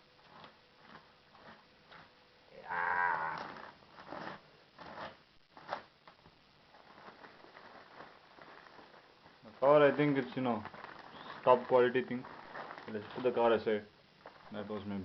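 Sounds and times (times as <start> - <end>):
plastic mailer being torn open: 6.7 - 13.6.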